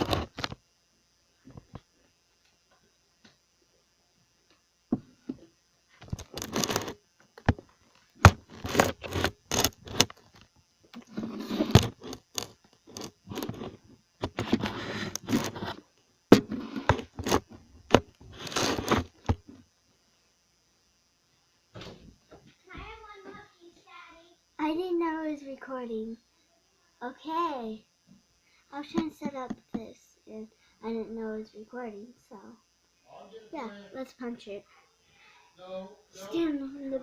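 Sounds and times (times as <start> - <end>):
device handling scraping and knocks: 0.0 - 0.6, 6.0 - 7.6, 8.2 - 10.4, 11.0 - 19.6.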